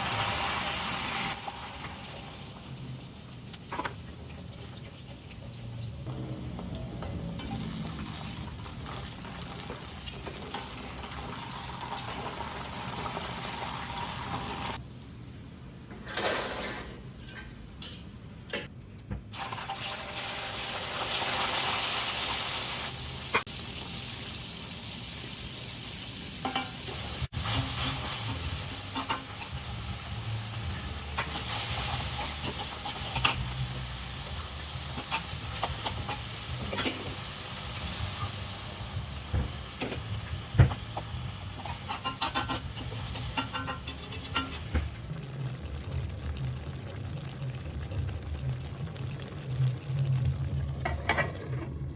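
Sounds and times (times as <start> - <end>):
food sizzling in a frying pan: 0.0 - 6.1, 7.2 - 14.8, 19.4 - 45.4
spatula scraping a pan: 35.0 - 37.2, 41.6 - 45.0.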